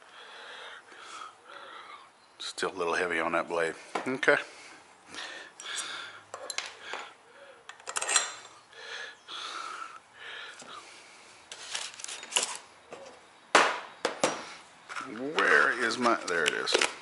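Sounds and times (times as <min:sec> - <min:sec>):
metal clinks and taps: 0:06.3 - 0:07.1.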